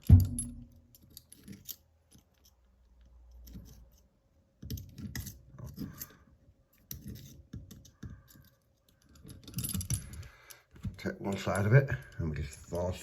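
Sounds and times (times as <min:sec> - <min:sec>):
handcuffs clicking and scratching: 0:00.8 - 0:10.6.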